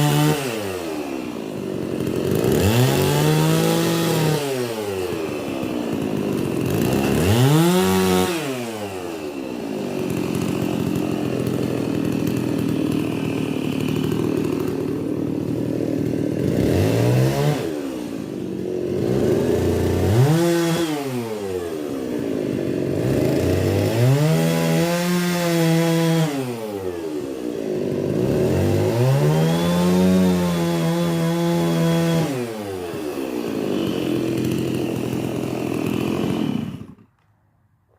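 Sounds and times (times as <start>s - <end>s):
chainsaw revving: 0.0s - 37.3s
chainsaw running under load: 0.0s - 37.4s.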